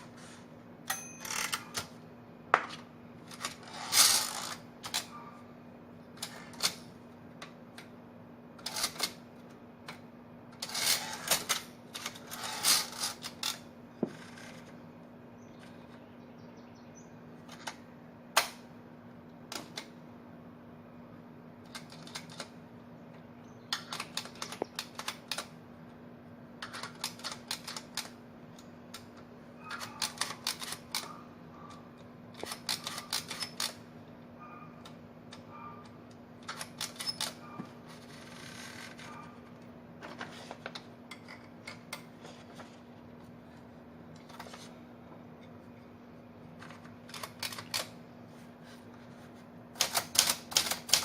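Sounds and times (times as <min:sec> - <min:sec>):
typewriter type-bar strikes: 0:49.8 - 0:51.0.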